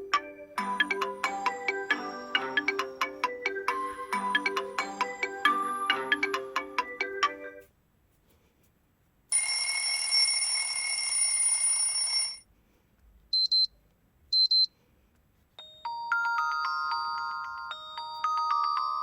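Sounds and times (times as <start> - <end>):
ringtone tune of short notes: 0.1 - 7.7, 15.6 - 19.0
buzzing phone ring tone: 9.4 - 12.4.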